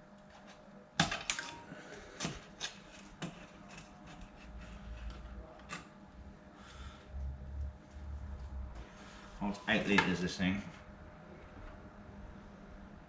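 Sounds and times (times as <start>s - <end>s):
clicks and knocks of tools: 0.4s - 1.6s
faint low rumble: 6.0s - 9.7s.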